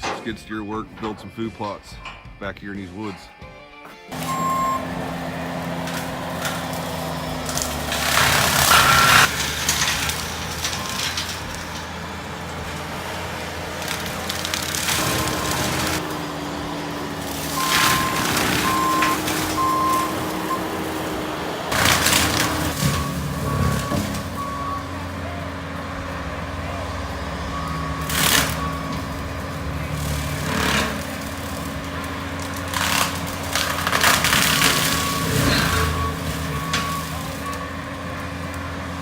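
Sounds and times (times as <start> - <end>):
mulching head grinding brush: 4.0 - 39.0
engine running under load: 4.1 - 39.0
back-up alarm beeping: 4.2 - 7.0, 14.9 - 31.0, 34.6 - 38.2.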